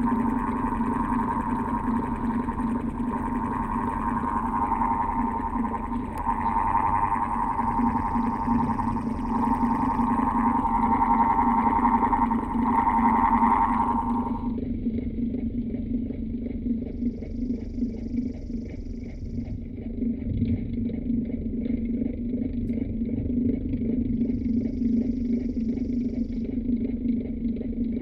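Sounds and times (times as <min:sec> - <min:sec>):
electric fan humming and whining: 0:00.0 - 0:14.6.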